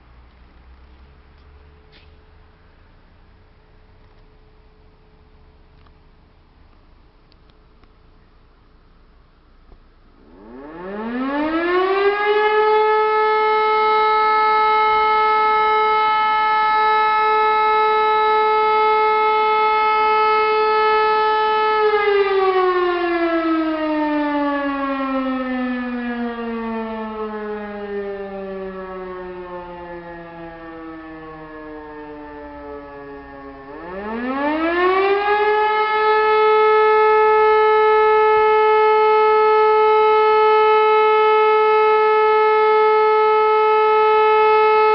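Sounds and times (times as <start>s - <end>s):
electric motor siren: 10.2s - 44.9s.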